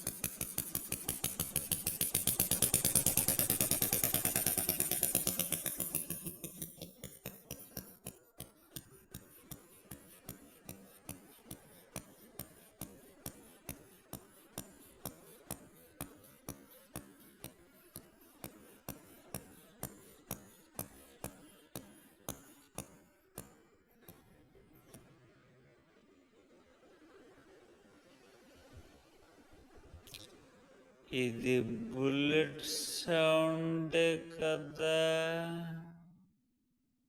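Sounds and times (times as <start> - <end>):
sharp clicks: 0.0 - 24.2.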